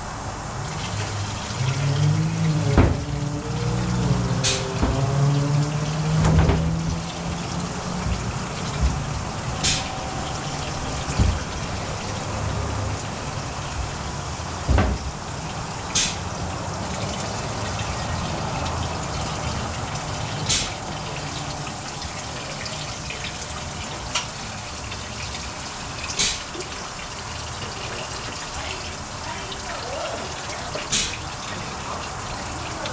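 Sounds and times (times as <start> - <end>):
liquid pouring: 0.0 - 32.9
dull knocks: 2.7 - 3.1, 4.7 - 5.2, 6.2 - 7.0, 8.0 - 10.0, 10.6 - 12.2, 14.7 - 15.2.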